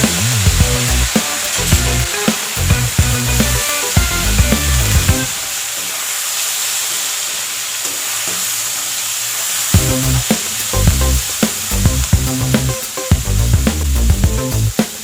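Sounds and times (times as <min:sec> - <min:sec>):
background music: 0:00.0 - 0:05.4
food sizzling in hot oil: 0:00.0 - 0:15.0.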